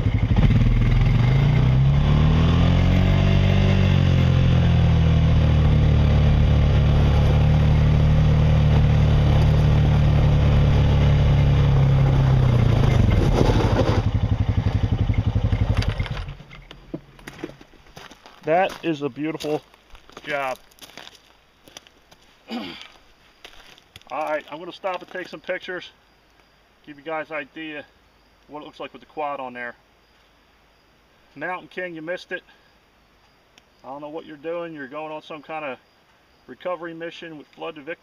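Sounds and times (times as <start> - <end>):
atv engine revving: 0.0 - 16.5.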